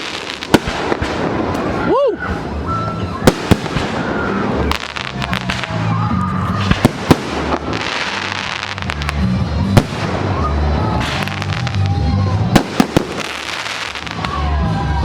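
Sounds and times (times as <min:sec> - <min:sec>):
fireworks bangs and pops: 0:00.0 - 0:02.6, 0:03.2 - 0:14.6
fireworks crackling hiss: 0:00.0 - 0:12.0, 0:12.6 - 0:15.0
music with heavy bass: 0:04.4 - 0:15.0.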